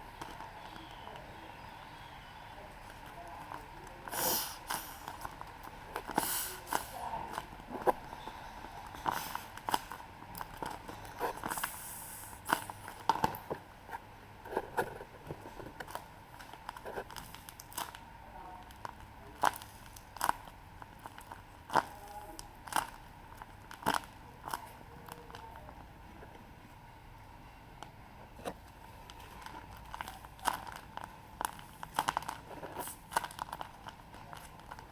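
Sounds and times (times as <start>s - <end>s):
paper packaging crinkling: 14.5s - 18.0s, 28.6s - 34.9s.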